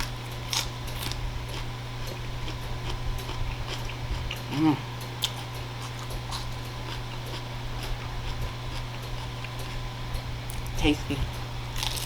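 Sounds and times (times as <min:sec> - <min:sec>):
chewing crunchy vegetables: 0:00.0 - 0:09.9, 0:10.5 - 0:12.0
person humming mm: 0:04.5 - 0:04.9, 0:10.8 - 0:11.3.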